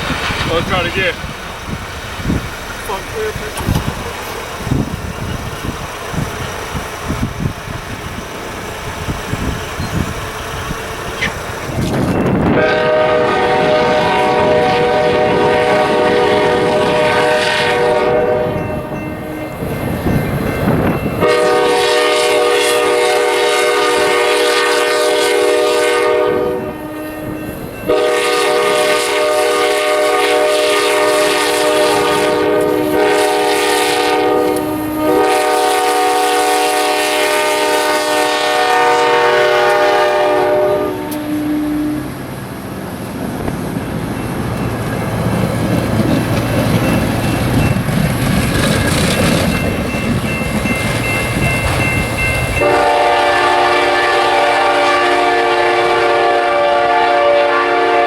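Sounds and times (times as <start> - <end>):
locomotive air horn blasts: 12.4 - 19.0, 21.2 - 42.1, 52.6 - 58.0.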